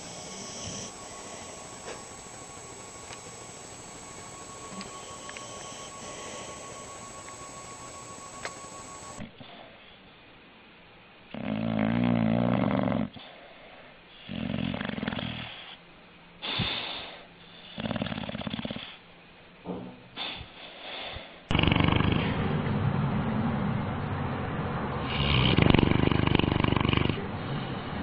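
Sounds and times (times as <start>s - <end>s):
dog snoring: 0.0s - 9.8s, 11.3s - 13.6s, 14.2s - 15.8s, 16.4s - 19.0s, 20.2s - 22.5s, 25.0s - 28.0s.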